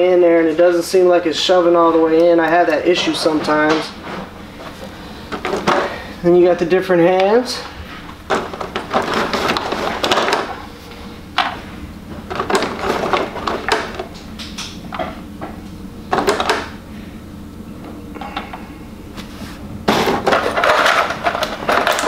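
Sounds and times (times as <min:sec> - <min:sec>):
small parts clicking and knocking: 0:20.0 - 0:22.0.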